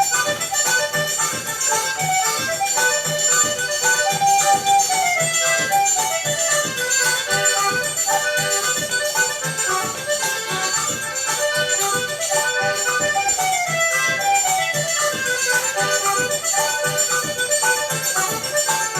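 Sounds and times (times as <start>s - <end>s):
accordion melody: 0.0s - 18.9s
steady even beat: 0.0s - 18.9s.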